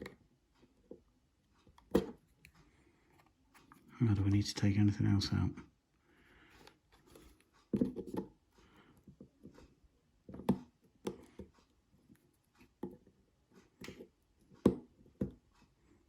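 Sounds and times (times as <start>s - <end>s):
plastic housing clicks and knocks: 1.7s - 2.5s, 7.2s - 8.3s, 10.2s - 11.5s.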